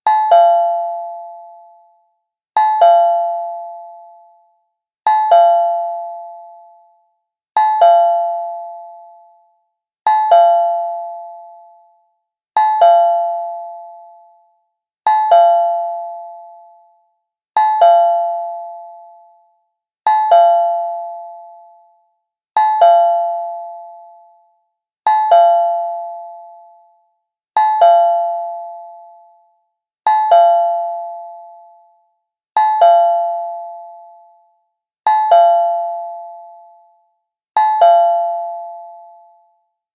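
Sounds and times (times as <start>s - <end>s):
doorbell ding-dong chime: 0.1s - 1.8s, 2.6s - 4.3s, 5.1s - 6.9s, 7.6s - 9.3s, 10.1s - 11.9s, 12.6s - 14.4s, 15.1s - 16.8s, 17.6s - 19.3s, 20.1s - 21.9s, 22.6s - 24.3s, 25.1s - 26.9s, 27.6s - 29.4s, 30.1s - 31.9s, 32.6s - 34.4s, 35.1s - 37.0s, 37.6s - 39.5s.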